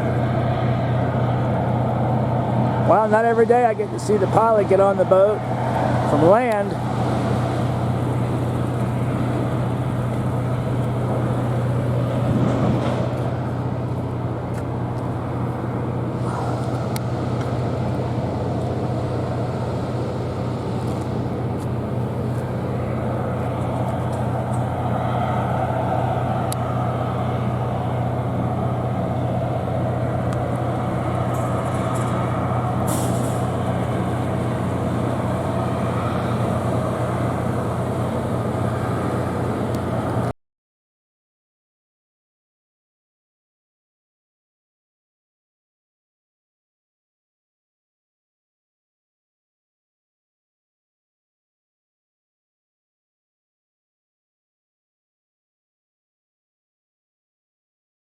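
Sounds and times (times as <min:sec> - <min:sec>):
low engine drone: 0:00.0 - 0:40.3.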